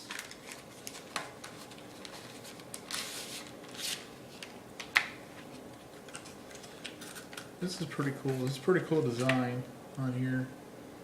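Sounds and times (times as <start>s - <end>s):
packaging rustling and scraping: 0.0s - 4.6s, 5.3s - 9.4s.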